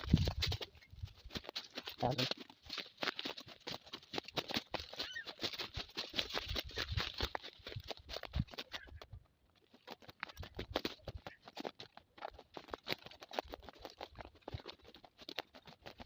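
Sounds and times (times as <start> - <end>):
wind rumble on microphone: 0.0 - 1.2, 6.4 - 9.2
crunching footsteps: 0.0 - 16.0.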